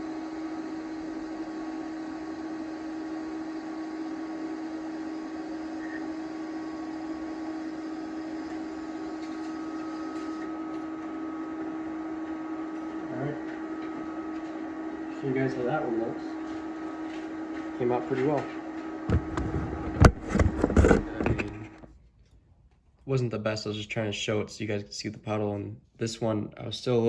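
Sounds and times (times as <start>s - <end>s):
welding arc humming and hissing: 4.4s - 14.2s.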